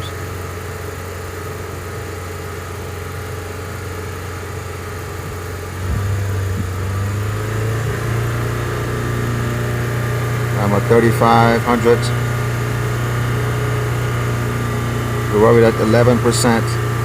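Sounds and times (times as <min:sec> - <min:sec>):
car engine revving: 0:03.6 - 0:17.0.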